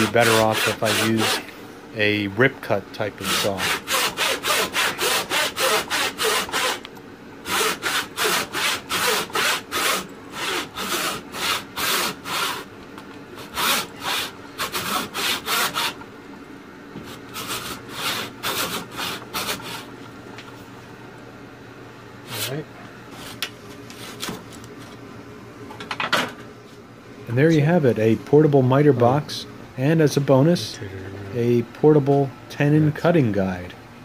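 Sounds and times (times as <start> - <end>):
hand saw cutting wood: 0.0 - 1.4, 3.2 - 6.8, 7.4 - 12.7, 13.4 - 16.0, 17.3 - 19.9.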